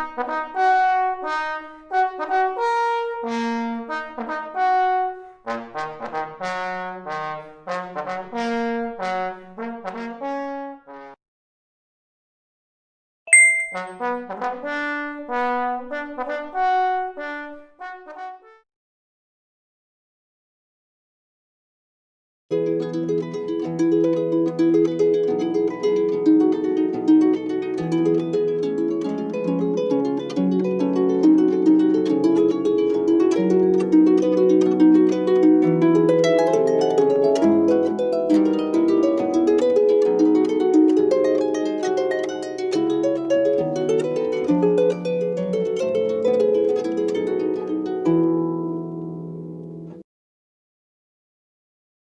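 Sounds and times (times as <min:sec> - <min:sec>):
plucked string instrument: 0:22.5 - 0:50.0.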